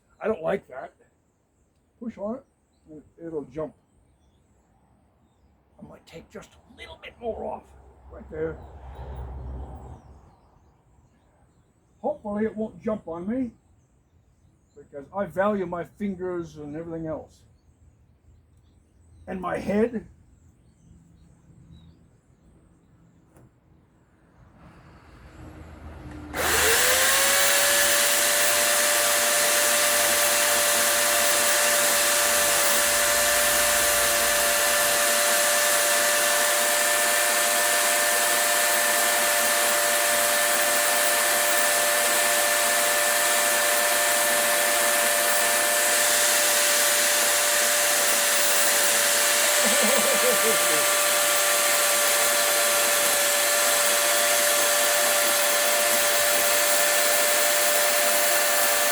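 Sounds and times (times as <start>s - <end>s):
rotary tool whining against wood: 26.0s - 58.9s.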